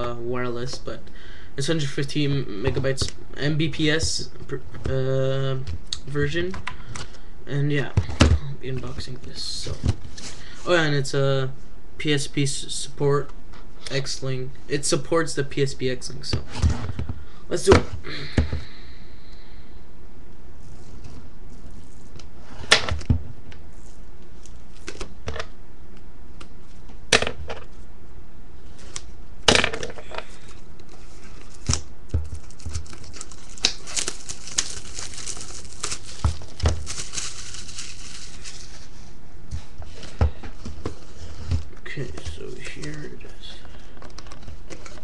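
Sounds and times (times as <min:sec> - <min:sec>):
packaging crinkling and tearing: 0:30.8 - 0:38.9.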